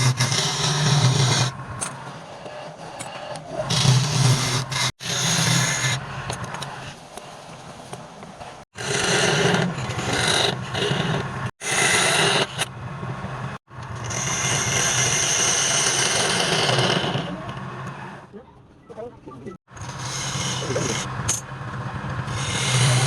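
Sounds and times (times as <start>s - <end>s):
turning tool scraping wood: 0.0s - 7.3s, 8.8s - 12.7s, 13.8s - 18.0s, 19.8s - 21.4s, 22.2s - 23.0s
wood lathe motor hum: 19.8s - 23.0s.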